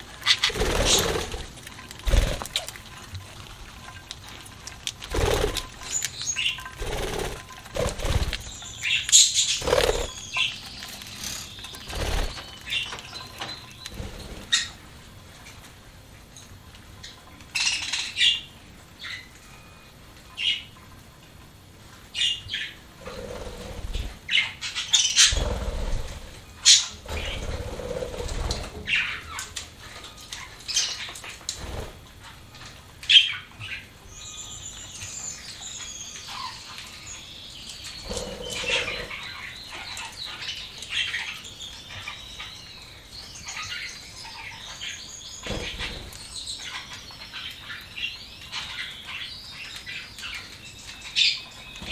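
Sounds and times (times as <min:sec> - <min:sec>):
wings fluttering: 0:00.0 - 0:14.8, 0:27.0 - 0:29.5
birds pecking and cracking seeds: 0:00.0 - 0:51.9.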